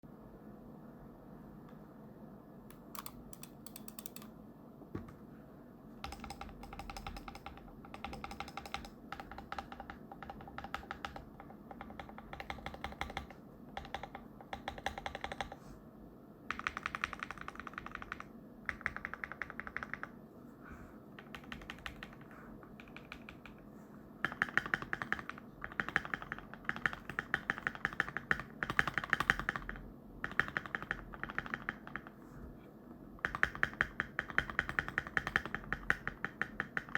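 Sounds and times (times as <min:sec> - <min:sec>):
mechanical keyboard typing: 0:02.7 - 0:04.3, 0:06.0 - 0:15.6, 0:16.5 - 0:20.2, 0:21.2 - 0:23.6, 0:24.2 - 0:32.2, 0:33.2 - 0:36.9.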